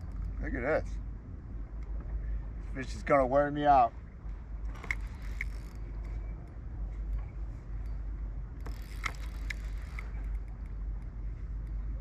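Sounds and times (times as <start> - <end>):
fishing reel ratcheting: 4.7 - 12.0.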